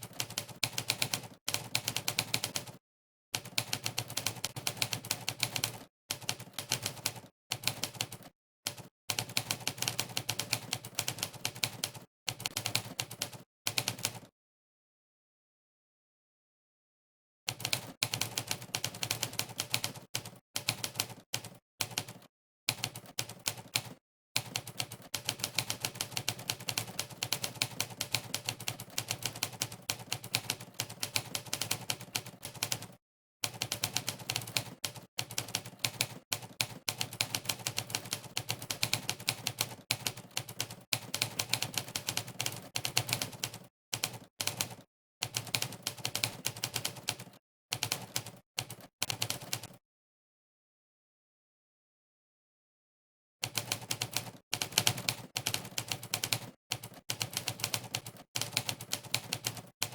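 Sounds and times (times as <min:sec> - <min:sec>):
typewriter keystroke clacks: 0:03.4 - 0:14.3, 0:17.5 - 0:49.8, 0:53.4 - 0:59.9.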